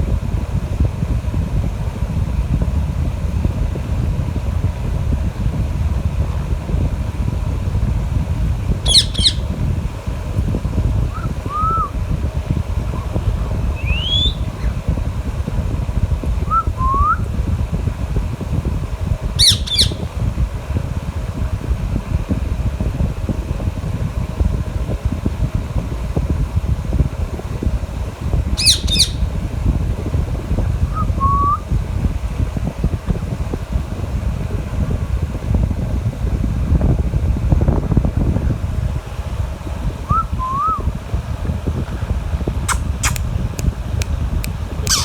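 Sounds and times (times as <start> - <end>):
steady low rumble: 0.0 - 45.0
parrot shrill calls: 8.8 - 9.5, 13.8 - 14.8, 19.4 - 20.1, 28.6 - 29.3
parakeet squawks: 8.8 - 9.6, 13.8 - 14.8, 19.4 - 20.1, 28.6 - 29.3, 42.7 - 43.2.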